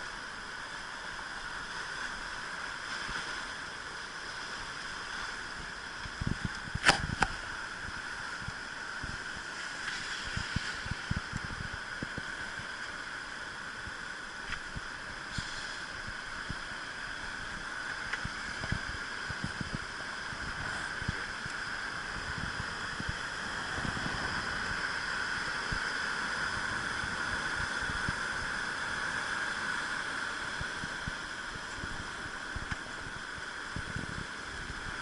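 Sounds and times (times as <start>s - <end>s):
wind buffeting microphone: 6.2s - 7.3s, 17.4s - 24.9s, 31.8s - 35.0s
river rushing water roar: 10.9s - 35.0s.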